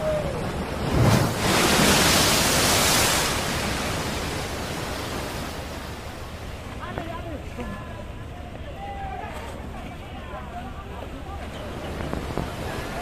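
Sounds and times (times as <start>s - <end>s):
rushing wave surge: 0.0s - 6.5s
rough sea: 0.0s - 13.0s.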